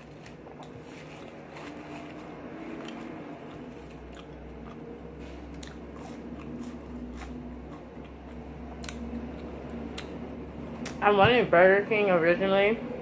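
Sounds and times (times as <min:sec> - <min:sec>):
person chewing food: 0:00.0 - 0:11.0.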